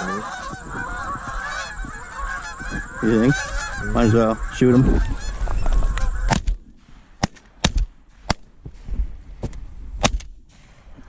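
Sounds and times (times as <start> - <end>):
geese honking: 0.0 - 6.4.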